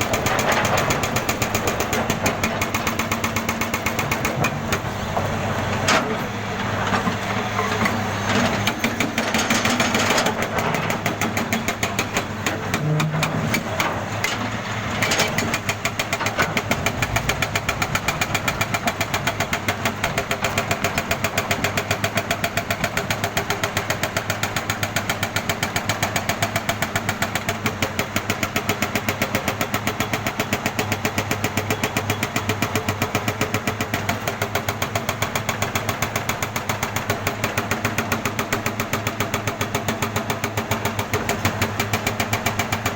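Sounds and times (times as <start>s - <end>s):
jackhammer hammering: 15.0s - 23.2s.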